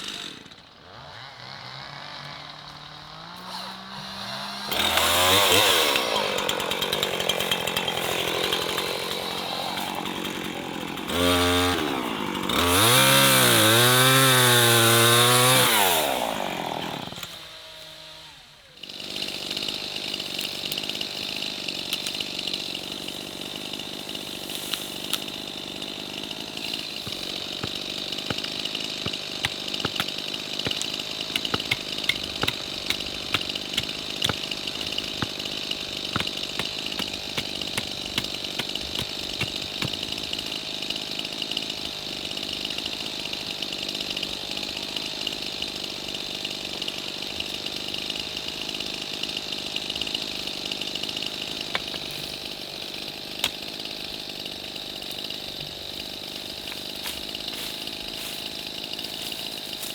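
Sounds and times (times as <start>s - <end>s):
sharp clicks: 29.1s - 35.5s.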